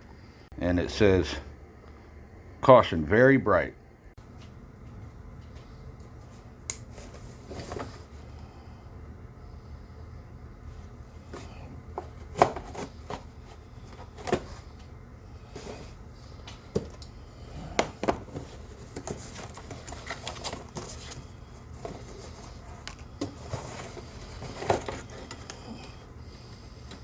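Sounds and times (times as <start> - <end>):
plastic packaging rustling: 18.1 - 25.8.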